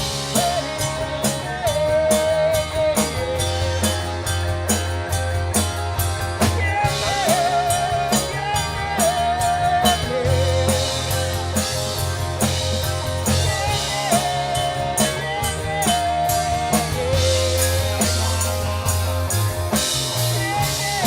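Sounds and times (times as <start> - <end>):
bass line: 0.0 - 21.0
drum beat: 0.0 - 21.0.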